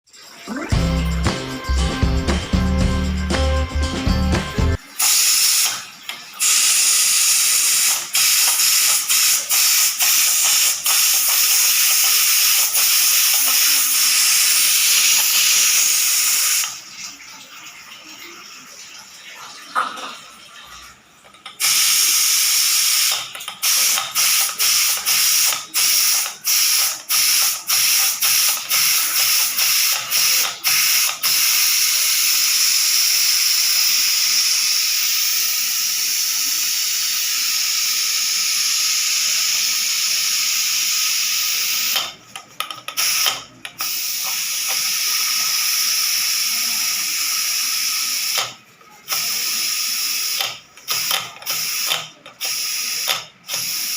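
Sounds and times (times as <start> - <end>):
pressure cooker whistle hissing: 4.8 - 5.8, 6.4 - 16.8, 21.6 - 42.0, 42.9 - 48.5, 49.1 - 53.9.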